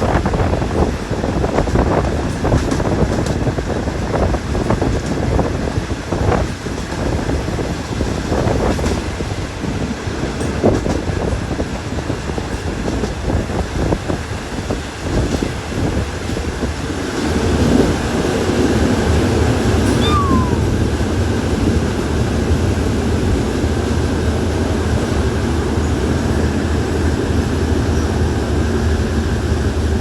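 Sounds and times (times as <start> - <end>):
train clatter: 0.0 - 30.0
train rumbling on rails: 0.0 - 30.0
short falling squeak: 19.9 - 20.6.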